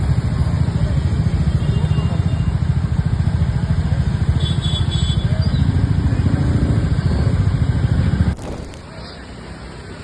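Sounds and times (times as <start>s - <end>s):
vehicle engine rumbling: 5.3s - 10.0s.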